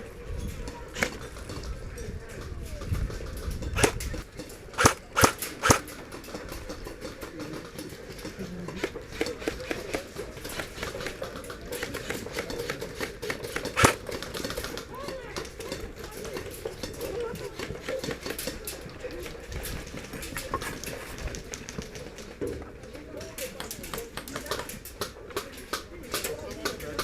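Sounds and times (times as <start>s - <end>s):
airsoft guns firing: 3.8s - 4.1s, 4.8s - 6.0s, 13.6s - 14.4s.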